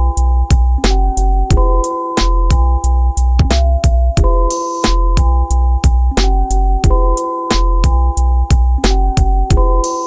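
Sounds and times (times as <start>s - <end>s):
deep heavy bass: 0.0s - 9.8s.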